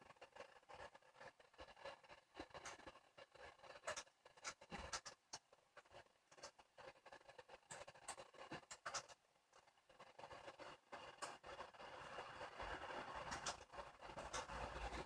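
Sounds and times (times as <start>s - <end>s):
faint steady hum: 0.0s - 15.0s
light clicks and taps: 3.7s - 6.7s, 7.6s - 9.7s.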